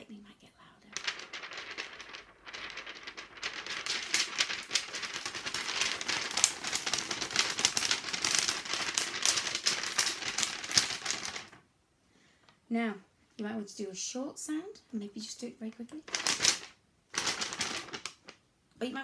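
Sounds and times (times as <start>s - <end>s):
paper shaken crackling: 0.9s - 11.6s, 16.0s - 18.4s.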